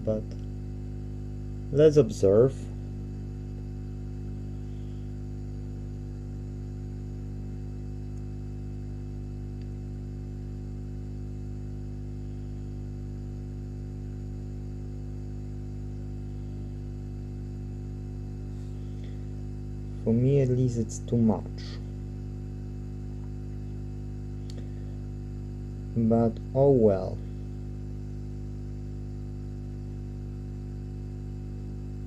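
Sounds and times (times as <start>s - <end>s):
electrical mains hum: 0.0s - 32.0s.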